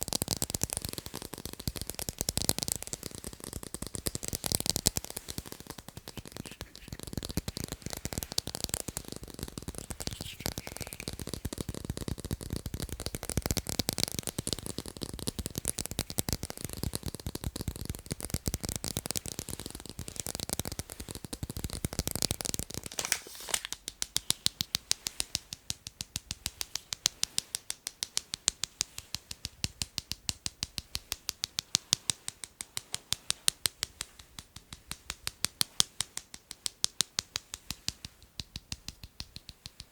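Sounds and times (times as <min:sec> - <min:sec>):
scratches on hard objects: 0:00.0 - 0:25.6
tapping on hard objects: 0:00.0 - 0:39.9.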